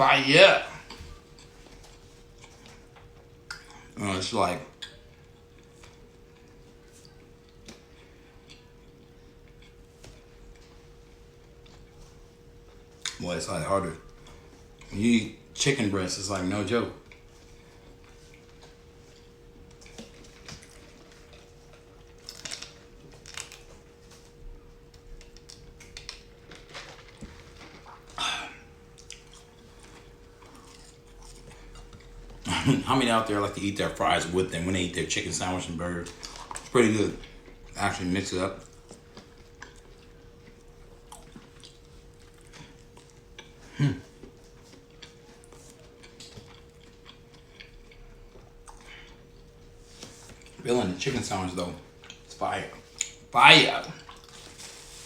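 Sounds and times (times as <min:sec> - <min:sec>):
faint steady hum: 0:00.0 - 0:55.0
chewing and biting crunches: 0:00.8 - 0:04.0, 0:04.7 - 0:13.2, 0:17.0 - 0:32.8, 0:38.5 - 0:51.1, 0:53.9 - 0:55.0.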